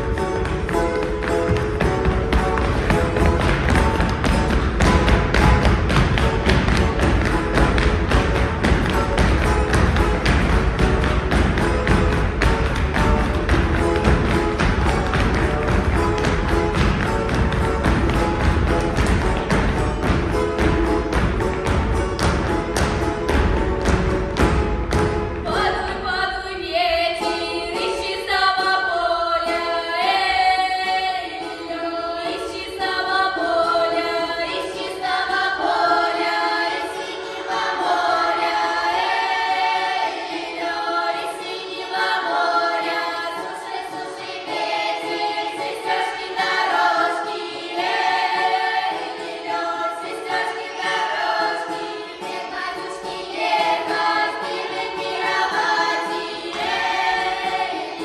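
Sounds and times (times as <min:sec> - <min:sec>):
voices singing in harmony: 0:25.4 - 0:58.0.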